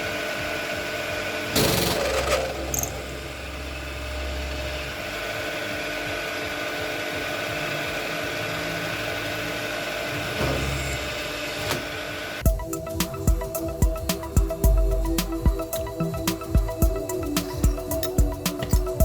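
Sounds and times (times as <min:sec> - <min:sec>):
workshop machine humming: 0:00.0 - 0:19.0
music with sharp beats: 0:04.5 - 0:10.3, 0:12.4 - 0:19.0.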